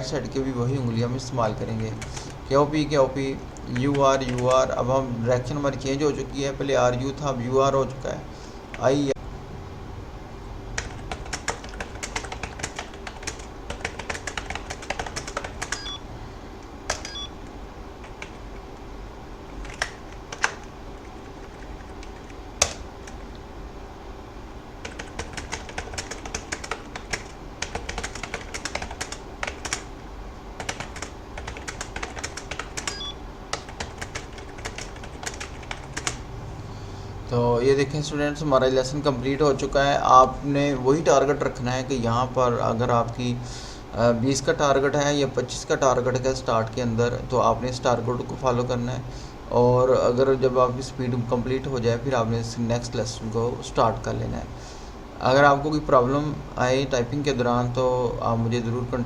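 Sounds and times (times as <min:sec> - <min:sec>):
computer keyboard typing: 0:01.8 - 0:02.4, 0:03.6 - 0:04.6, 0:10.8 - 0:16.0, 0:16.9 - 0:17.3, 0:18.0 - 0:18.4, 0:19.5 - 0:23.3, 0:24.8 - 0:29.9, 0:30.6 - 0:36.2.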